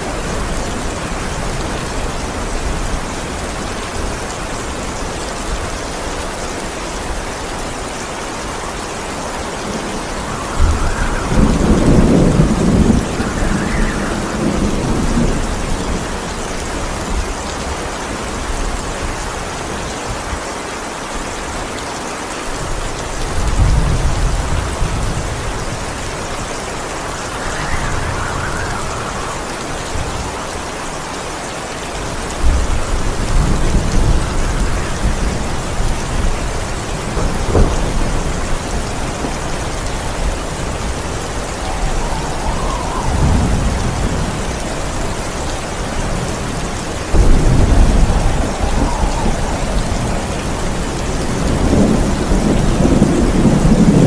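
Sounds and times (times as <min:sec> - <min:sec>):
steady rain: 0:00.0 - 0:54.0
thunder claps and rumbles: 0:08.6 - 0:20.4, 0:22.5 - 0:31.4, 0:32.0 - 0:54.0.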